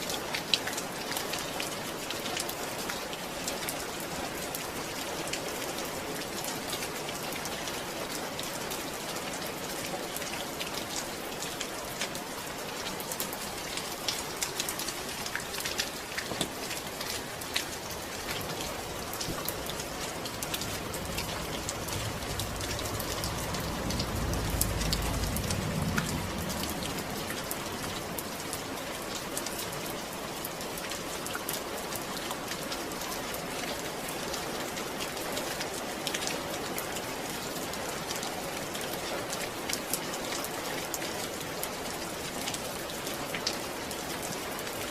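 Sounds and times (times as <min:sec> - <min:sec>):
rain drops ticking on a surface: 0:00.0 - 0:44.9
low rumble: 0:19.6 - 0:28.2.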